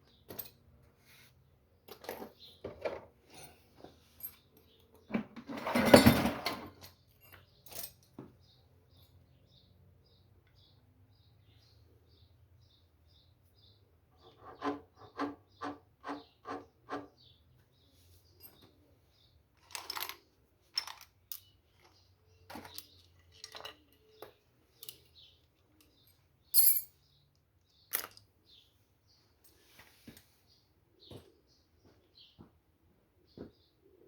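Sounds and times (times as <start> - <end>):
metal tools clinking and tapping: 0.1 - 0.8, 1.8 - 9.2, 18.3 - 18.9, 19.6 - 28.3.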